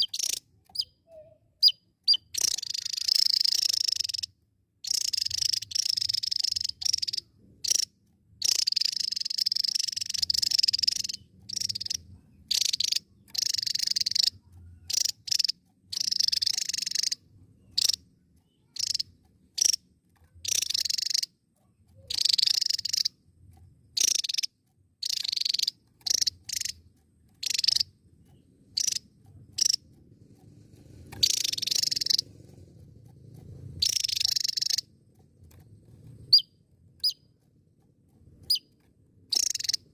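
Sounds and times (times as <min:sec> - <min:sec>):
bird singing high song: 0:00.0 - 0:30.0, 0:31.1 - 0:32.6, 0:33.7 - 0:37.4, 0:38.4 - 0:39.9.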